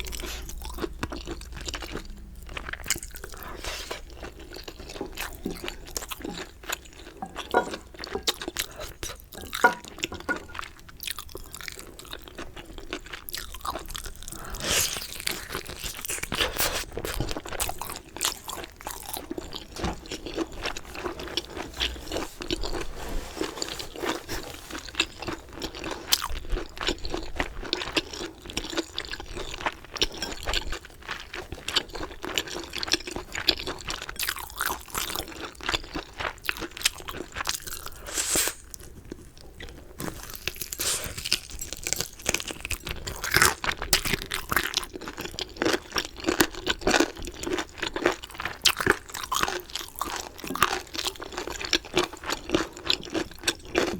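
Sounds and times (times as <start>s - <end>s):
crunching fried chicken: 0.0s - 22.8s, 23.6s - 53.9s.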